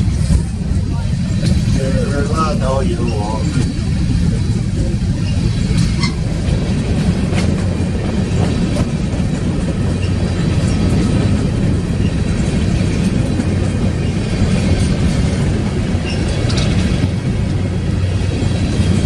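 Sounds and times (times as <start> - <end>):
train cars rumbling past on rails: 0.0 - 19.0
wheels clicking and squeaking: 16.0 - 16.9.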